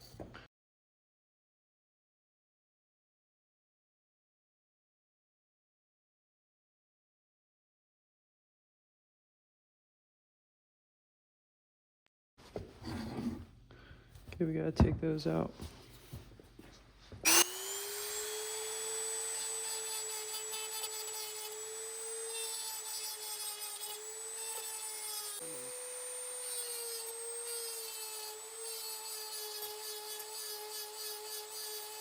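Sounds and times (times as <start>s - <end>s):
power tool motor whine: 17.2s - 32.0s.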